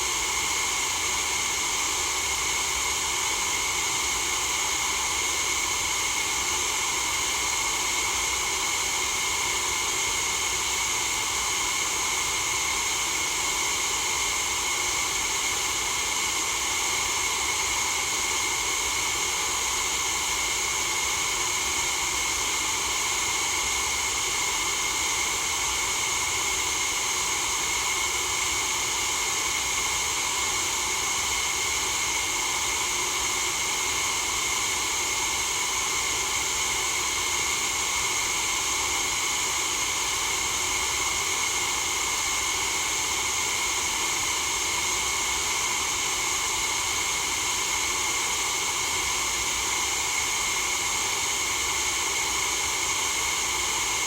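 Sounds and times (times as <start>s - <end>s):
white noise hiss: 0.0s - 2.5s.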